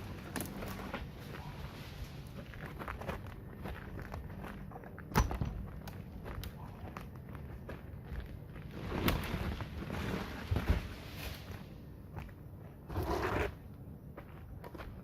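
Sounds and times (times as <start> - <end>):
noisy rustles: 8.0 - 11.8.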